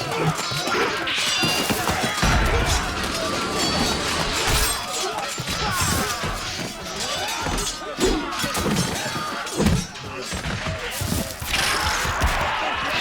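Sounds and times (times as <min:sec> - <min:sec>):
crashes and hits: 0:01.2 - 0:13.0.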